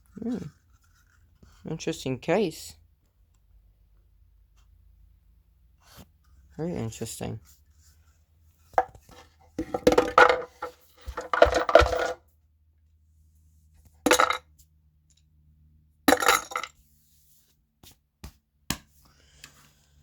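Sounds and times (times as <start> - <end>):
small parts clinking and clattering: 9.6 - 12.2, 14.1 - 14.5, 16.1 - 16.8.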